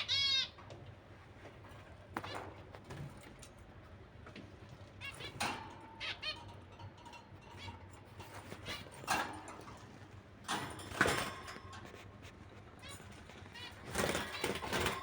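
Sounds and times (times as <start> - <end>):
birds chirping and squawking: 0.0 - 0.7, 4.8 - 15.0
low background hum: 0.0 - 15.0.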